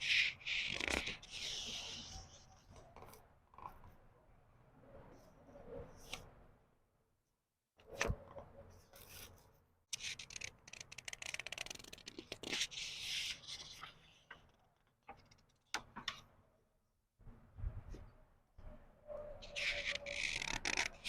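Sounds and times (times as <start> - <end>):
book pages turning: 10.0 - 14.4.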